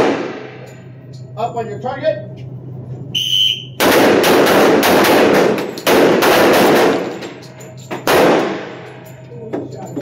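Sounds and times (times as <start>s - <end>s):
pistol shots echoing indoors: 0.0s - 0.8s, 3.4s - 9.2s.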